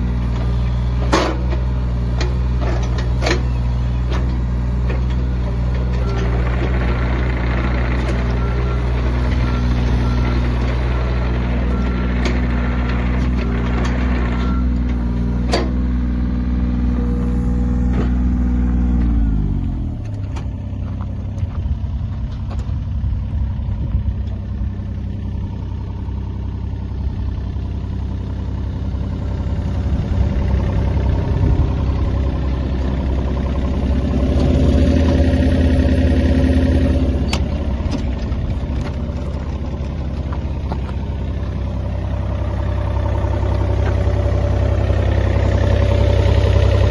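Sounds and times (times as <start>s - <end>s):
excavator diesel engine running: 0.0s - 46.9s
sharp clunks: 15.4s - 15.8s.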